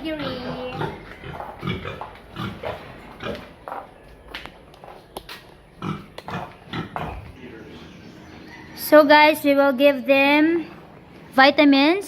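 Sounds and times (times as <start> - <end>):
pigs grunting: 0.0 - 3.6, 5.8 - 7.9.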